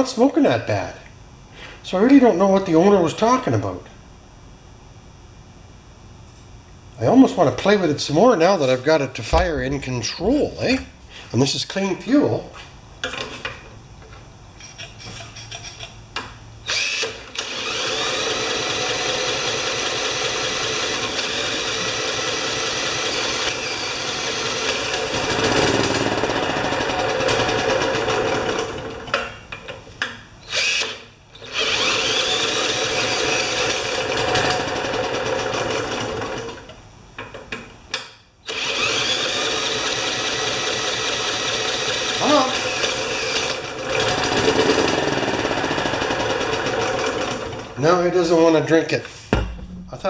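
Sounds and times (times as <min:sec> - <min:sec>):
cordless drill whining: 0:16.6 - 0:28.7, 0:30.4 - 0:36.3, 0:38.4 - 0:47.6.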